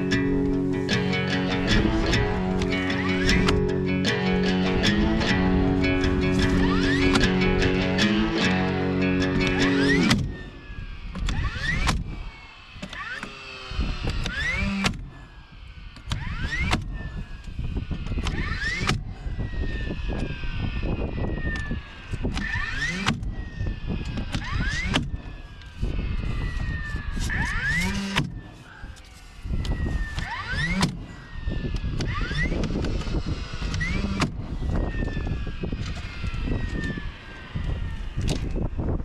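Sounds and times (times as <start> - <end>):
background music: 0.0 - 10.2
sharp clicks: 0.0 - 12.1
electric motor whining: 0.0 - 39.0.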